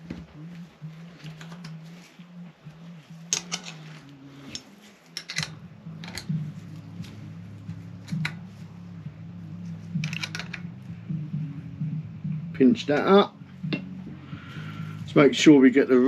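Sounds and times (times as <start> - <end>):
low humming tone: 0.0 - 16.0
hand tools clicking on metal parts: 3.3 - 4.6, 5.2 - 6.4, 10.0 - 10.6.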